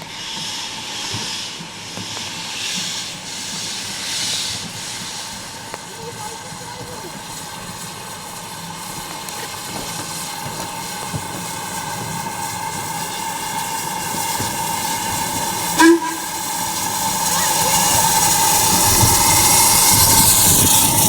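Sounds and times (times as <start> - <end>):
train running: 0.0 - 21.0
train horn toot: 15.7 - 16.9.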